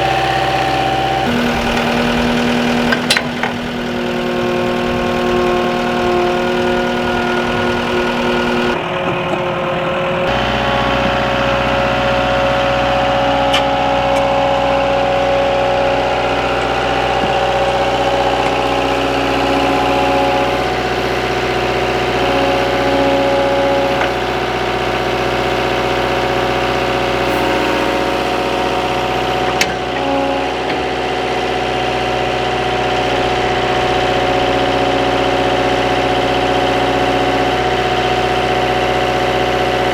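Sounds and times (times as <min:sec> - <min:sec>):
skid steer engine running: 0:00.0 - 0:39.9.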